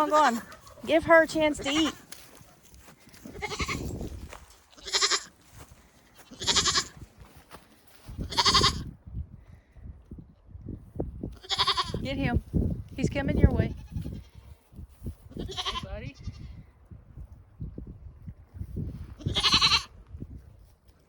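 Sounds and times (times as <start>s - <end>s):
goats bleating: 1.5s - 2.0s, 3.3s - 3.9s, 4.7s - 5.4s, 6.2s - 7.0s, 8.3s - 8.8s, 11.4s - 12.0s, 15.4s - 16.4s, 19.2s - 19.9s.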